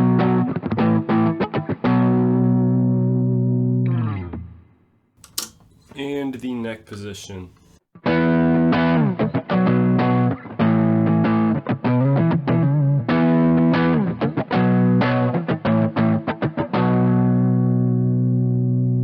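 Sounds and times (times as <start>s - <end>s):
overdriven electric guitar riff: 8.1s - 19.0s.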